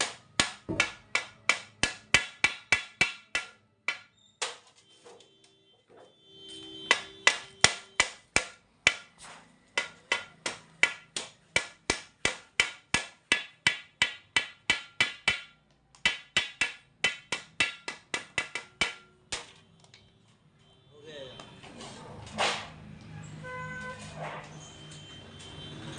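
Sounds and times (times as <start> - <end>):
hammer blows ringing: 0.0 - 4.6, 6.4 - 19.6.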